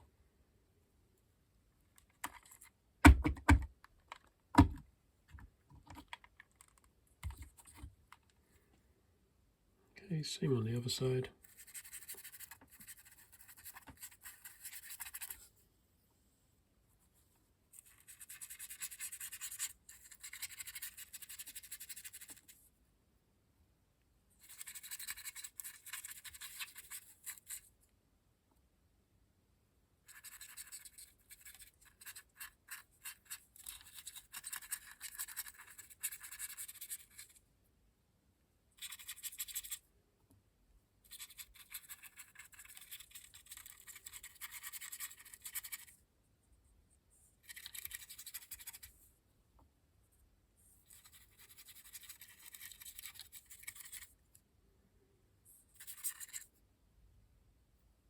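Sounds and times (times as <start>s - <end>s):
brush bristles scratching: 50.9s - 54.1s.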